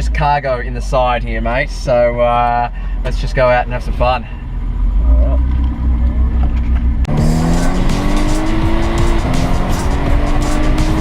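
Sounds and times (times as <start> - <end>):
car engine accelerating: 3.8 - 11.0.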